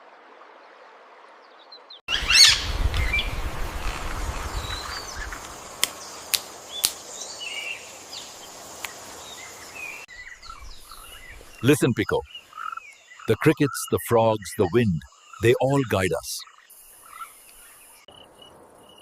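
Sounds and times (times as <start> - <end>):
birds chirping and calling: 2.1 - 18.2
sharp clicks: 5.8 - 7.0.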